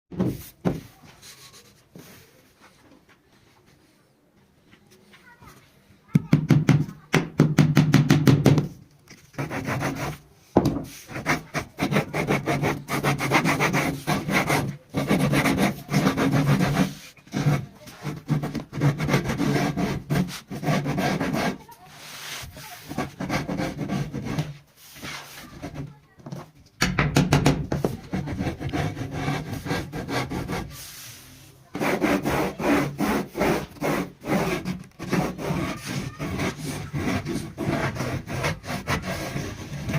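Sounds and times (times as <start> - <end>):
hand sawing and rubbing wood: 9.2 - 26.0, 27.4 - 39.9.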